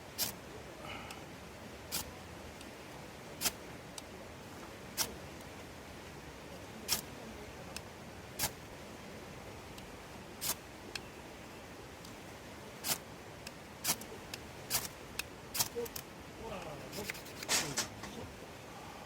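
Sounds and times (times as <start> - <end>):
wood fire crackling: 0.0 - 8.7, 11.9 - 18.1.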